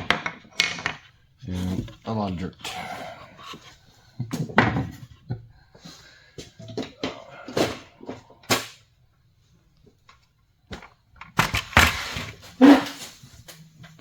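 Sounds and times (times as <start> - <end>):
tools knocking and clicking: 0.0 - 1.2.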